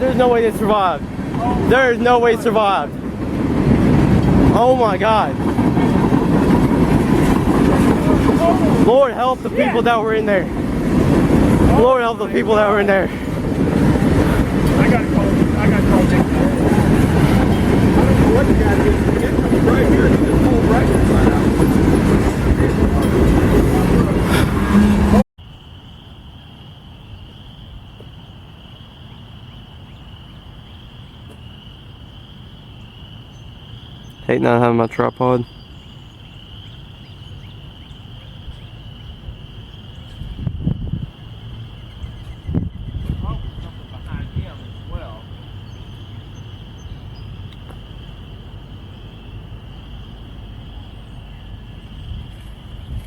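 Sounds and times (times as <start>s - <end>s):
crickets trilling: 0.0s - 23.6s, 25.4s - 53.0s
loud train noise: 0.0s - 25.3s, 25.9s - 53.0s
high insect drone: 25.4s - 53.0s.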